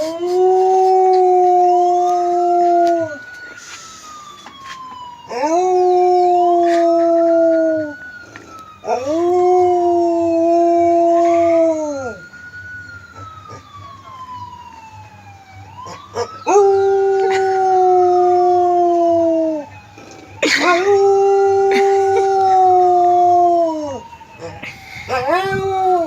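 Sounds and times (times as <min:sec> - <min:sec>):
dog howling: 0:00.0 - 0:03.2, 0:05.3 - 0:07.9, 0:08.8 - 0:12.2, 0:15.8 - 0:19.7, 0:20.5 - 0:26.0
wailing siren: 0:00.0 - 0:26.0.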